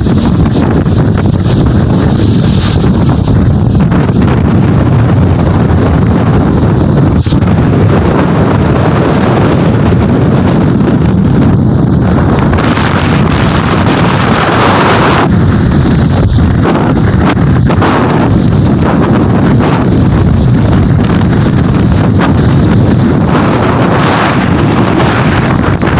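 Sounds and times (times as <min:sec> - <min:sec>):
strong wind on microphone: 0:00.0 - 0:25.9.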